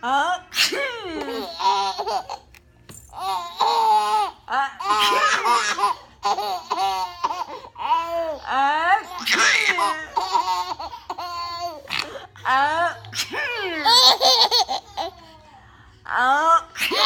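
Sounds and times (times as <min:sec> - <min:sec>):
babies giggling: 0:00.7 - 0:02.4, 0:03.1 - 0:12.3, 0:13.2 - 0:15.5, 0:16.7 - 0:17.0.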